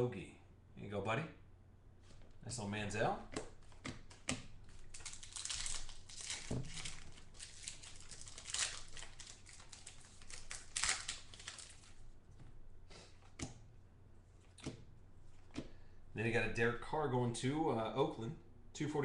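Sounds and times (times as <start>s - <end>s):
card packaging crinkling: 3.6s - 12.0s.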